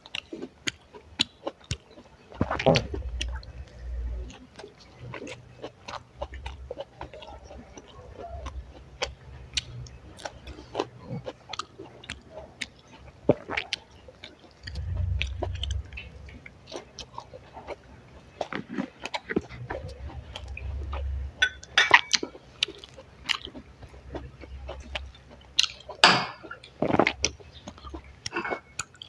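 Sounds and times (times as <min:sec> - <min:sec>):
wet chewing and mouth clicks: 0:00.0 - 0:29.0
low rumble: 0:02.7 - 0:04.4, 0:14.6 - 0:17.3.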